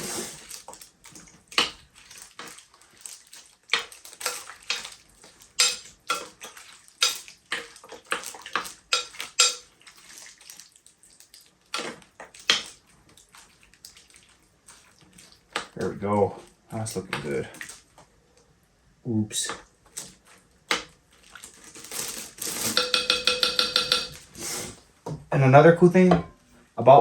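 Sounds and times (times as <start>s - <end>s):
utensil clinking and scraping pot: 1.5s - 10.3s, 21.8s - 24.8s.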